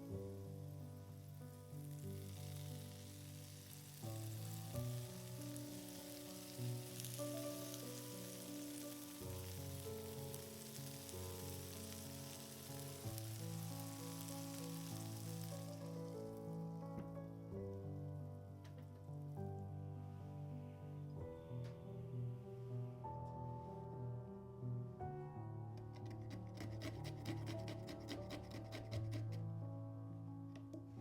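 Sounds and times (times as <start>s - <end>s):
food sizzling in hot fat: 0.0s - 16.7s, 26.0s - 29.4s
background music: 0.0s - 31.0s.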